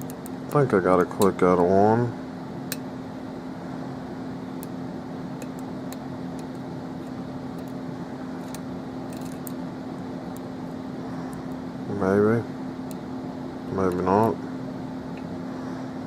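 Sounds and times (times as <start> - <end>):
steady background hum: 0.0 - 16.0
metallic lock picking clicks: 8.4 - 9.6.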